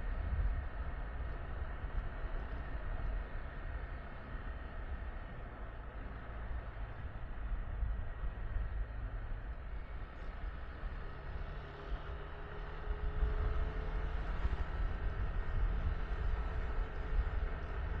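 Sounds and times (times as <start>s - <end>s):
wind rumble on microphone: 0.0s - 18.0s.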